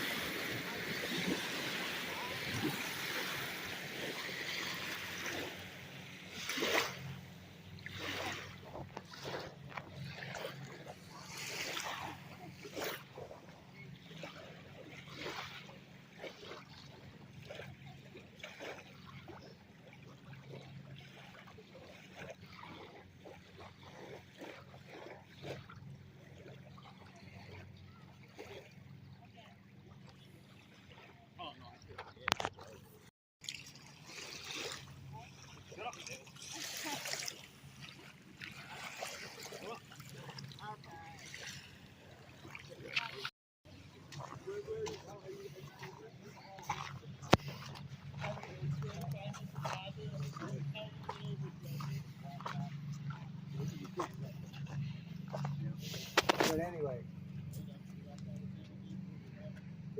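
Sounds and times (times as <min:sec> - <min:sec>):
surf washing: 0:00.0 - 0:17.7, 0:30.5 - 0:57.0
water splashing and sloshing: 0:00.0 - 0:59.9.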